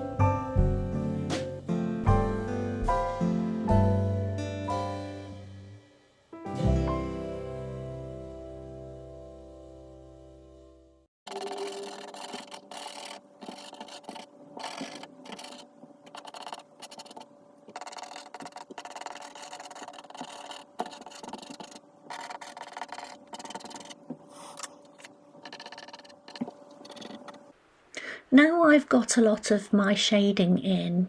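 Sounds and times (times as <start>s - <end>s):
chalk scratching on paper: 11.3s - 24.6s, 25.4s - 27.4s.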